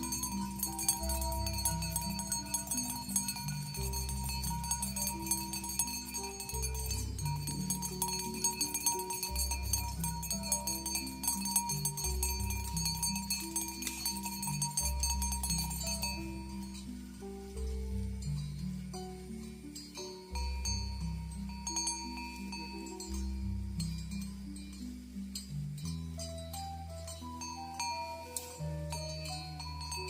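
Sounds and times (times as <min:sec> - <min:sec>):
fast high percussion: 0:00.0 - 0:17.0
background music: 0:00.0 - 0:30.0.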